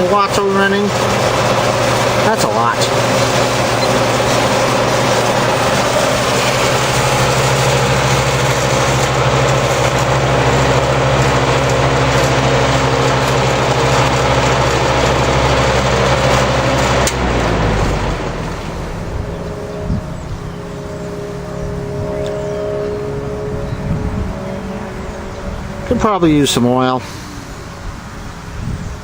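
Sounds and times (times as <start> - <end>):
box fan running: 0.0 - 29.0.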